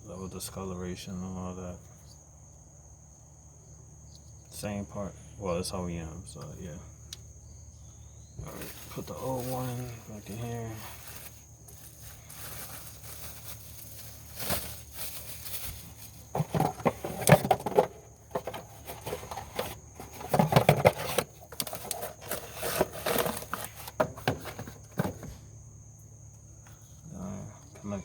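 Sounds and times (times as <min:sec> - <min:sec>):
packaging rustling and scraping: 0:08.4 - 0:25.4.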